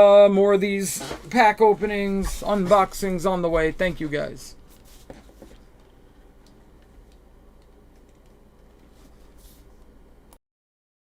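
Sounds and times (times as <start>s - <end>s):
low steady hum: 0.0s - 10.4s
soft rustle: 0.8s - 5.8s, 8.7s - 9.9s.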